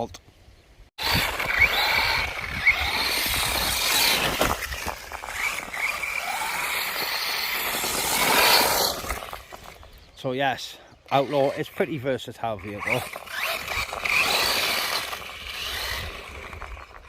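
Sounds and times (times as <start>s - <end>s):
wind on microphone: 1.0s - 5.8s
electric motor whining: 1.0s - 10.0s, 12.6s - 17.0s.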